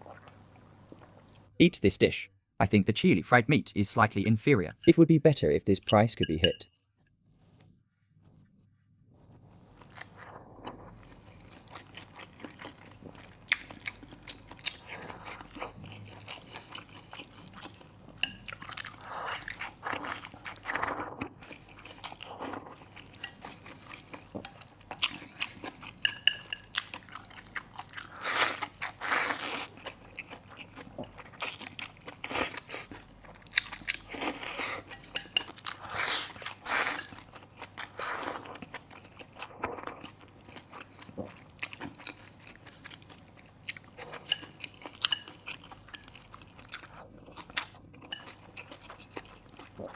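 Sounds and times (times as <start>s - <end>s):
person chewing crunchy food: 9.2s - 49.9s.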